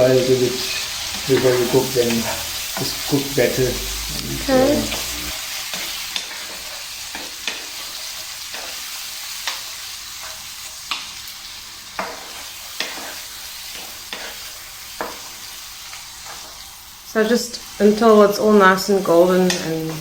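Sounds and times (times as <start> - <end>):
meat sizzling in hot oil: 0.0 - 20.0.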